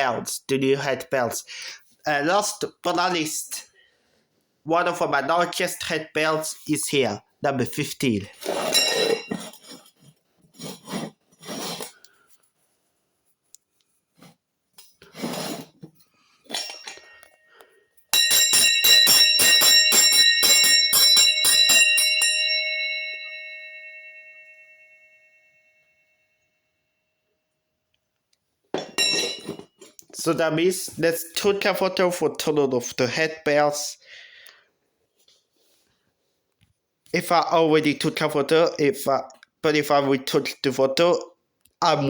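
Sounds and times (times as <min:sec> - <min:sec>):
handbell ringing: 0:18.2 - 0:26.0, 0:29.0 - 0:29.5.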